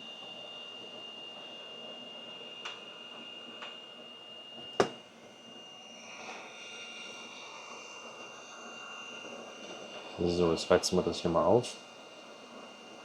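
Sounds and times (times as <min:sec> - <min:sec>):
blower hiss with high whine: 0:00.0 - 0:13.0.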